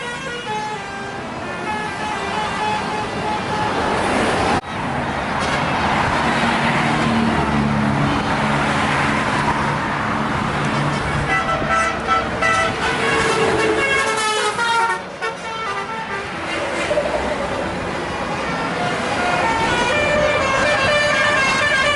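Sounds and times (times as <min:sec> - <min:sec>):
multi-tone musical air horn: 0:00.0 - 0:04.0, 0:11.3 - 0:16.4, 0:18.6 - 0:21.9
heavy vehicle passing: 0:01.1 - 0:21.9.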